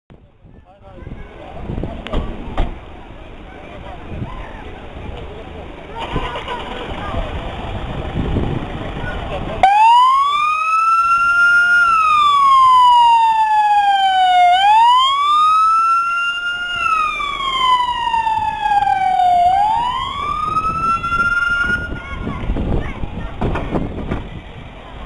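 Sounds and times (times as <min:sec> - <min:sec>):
police siren wailing: 0:09.6 - 0:22.0.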